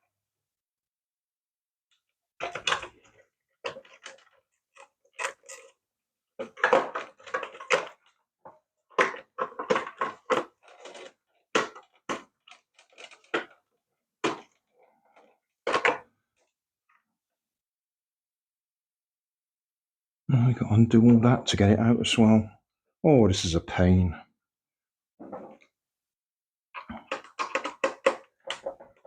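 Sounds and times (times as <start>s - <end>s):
plastic toy parts clicking and rattling: 2.4s - 5.8s, 6.4s - 16.5s, 26.8s - 29.0s.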